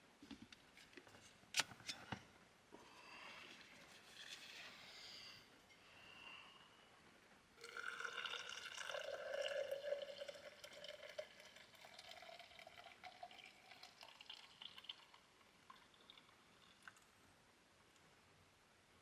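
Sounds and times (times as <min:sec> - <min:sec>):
hot water pouring into vessel: 0:07.6 - 0:17.2
water dripping: 0:07.6 - 0:17.2.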